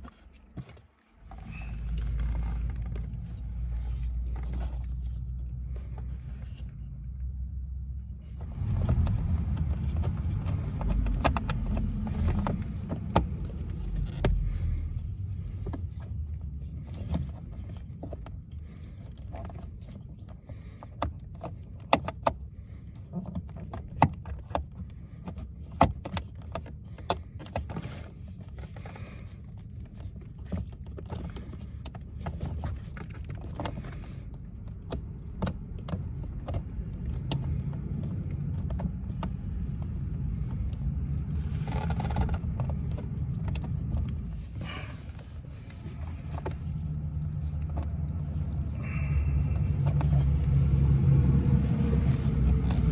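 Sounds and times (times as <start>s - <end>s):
steady low rumble: 1.2s - 20.7s, 31.4s - 52.9s
clicks and knocks on plastic parts: 8.4s - 50.9s.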